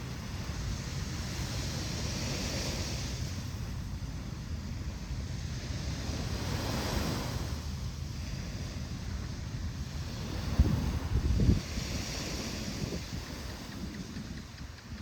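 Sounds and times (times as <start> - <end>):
ocean waves breaking on beach: 0.0 - 15.0
wind rumble on microphone: 0.0 - 15.0.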